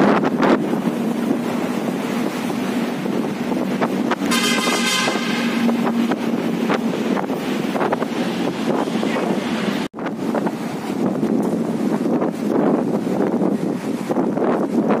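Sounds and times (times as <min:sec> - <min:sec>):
traffic rumble: 0:00.0 - 0:15.0
wind buffeting microphone: 0:00.0 - 0:15.0
brief high-pitched tone: 0:04.3 - 0:05.9.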